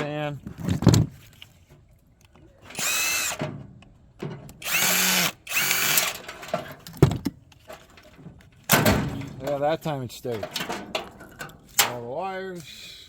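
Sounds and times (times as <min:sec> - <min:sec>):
power drill motor whine: 0:02.7 - 0:03.4, 0:04.6 - 0:06.2.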